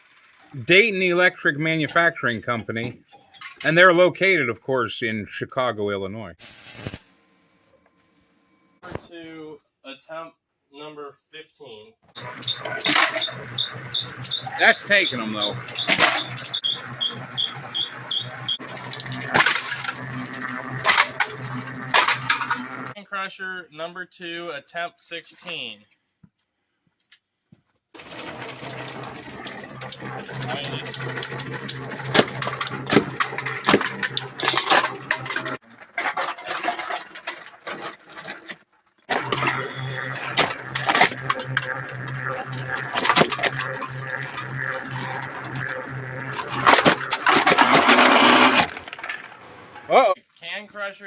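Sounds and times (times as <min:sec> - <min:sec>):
cans clanking and crunching: 0:12.2 - 0:22.9, 0:28.0 - 0:49.9
electric motor hum: 0:12.2 - 0:23.0, 0:28.0 - 0:35.6, 0:39.1 - 0:49.8.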